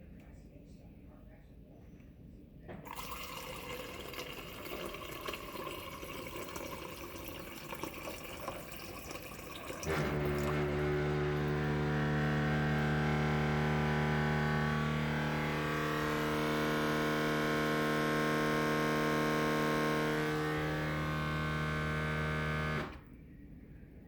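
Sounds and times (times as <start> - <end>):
water running: 2.9 - 22.9
refrigerator dispenser hum: 9.6 - 23.1.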